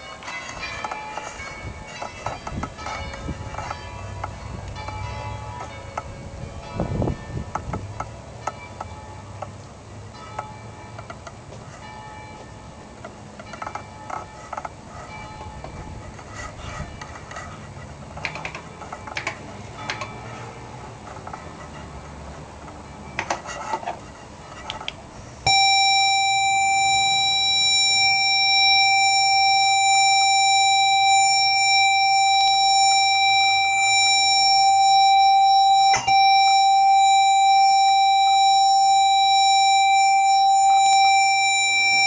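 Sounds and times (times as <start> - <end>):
steady square-wave tone: 25.2 - 42.0.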